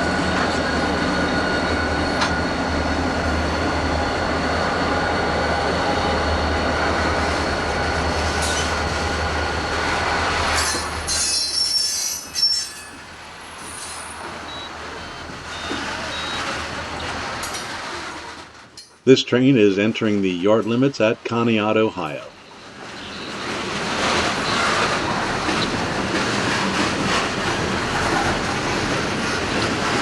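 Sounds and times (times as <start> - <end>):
train cars rumbling: 0.0 - 30.0
train wheels squealing: 7.3 - 17.7, 22.3 - 30.0.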